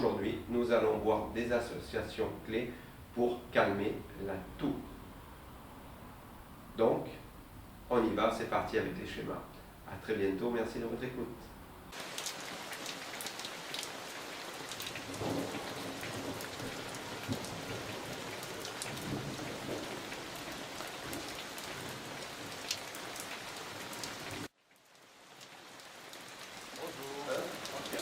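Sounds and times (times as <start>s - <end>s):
steady rain falling: 0.0s - 28.0s
rain drops ticking: 7.2s - 28.0s.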